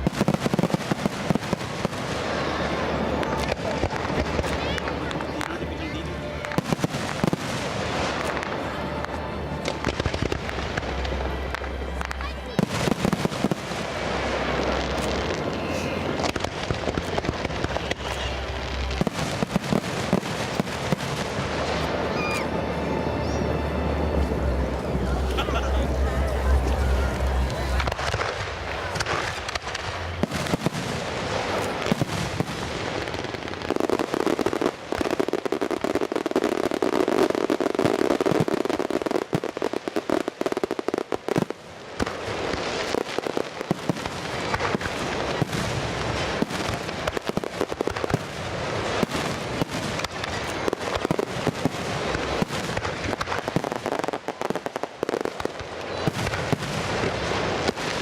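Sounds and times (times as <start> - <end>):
fireworks popping and crackling: 0.0 - 22.5, 24.1 - 58.0
low rumble: 13.2 - 32.4.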